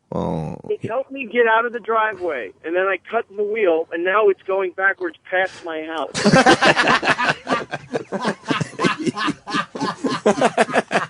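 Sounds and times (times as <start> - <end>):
men laughing: 6.1 - 11.0.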